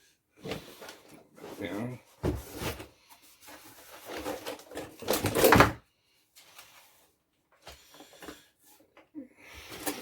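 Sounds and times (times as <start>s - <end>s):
cardboard rustling: 0.5s - 5.8s.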